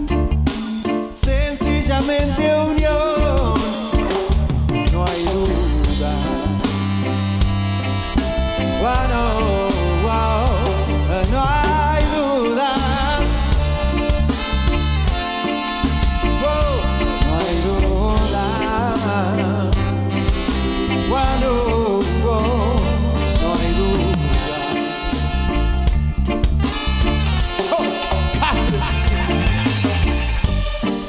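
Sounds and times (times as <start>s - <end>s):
drum kit: 0.0s - 31.0s
heavy bass line: 0.0s - 31.0s
reggae band playing: 0.0s - 31.0s.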